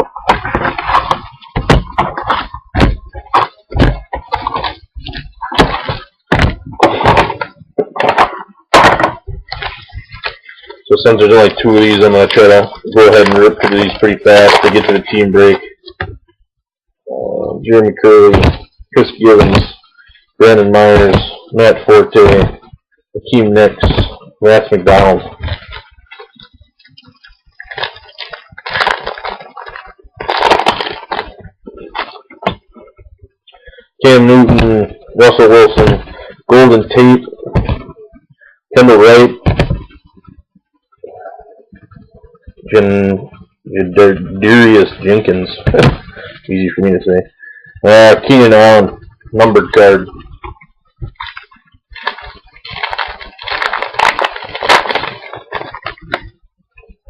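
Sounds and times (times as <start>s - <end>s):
plastic wrapper tearing and crinkling: 9.5s - 15.3s, 25.5s - 32.4s, 51.2s - 56.3s
cards being handled: 51.2s - 56.2s.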